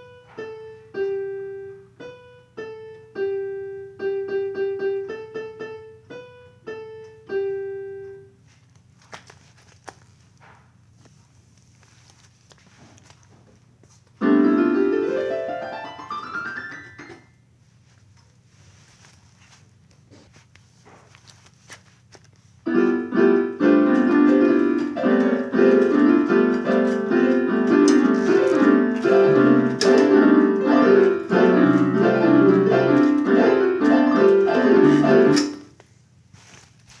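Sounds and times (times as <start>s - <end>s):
electronic keyboard note clusters: 22.7s - 35.7s.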